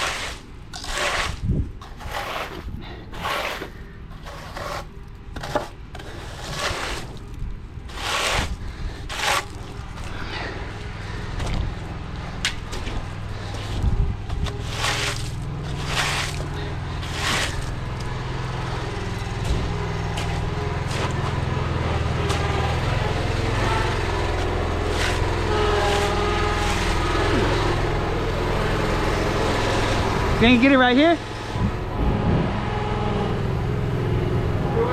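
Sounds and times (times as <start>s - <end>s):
sharp knocks and scrapes: 0.0s - 31.7s
vehicle engine running: 9.6s - 34.9s.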